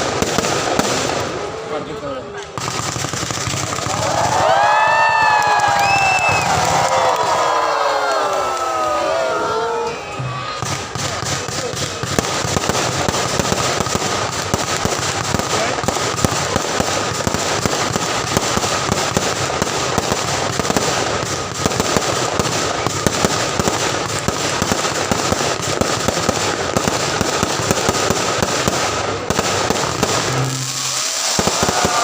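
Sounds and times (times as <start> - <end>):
fireworks bangs and crackles: 0.0 - 32.0.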